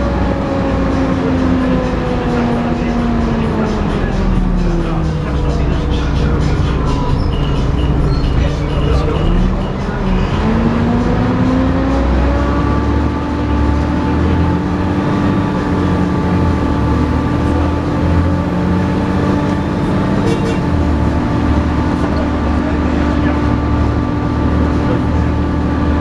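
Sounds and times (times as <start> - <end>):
bus engine pulling hard: 0.0 - 26.0
high steady whine: 0.0 - 26.0.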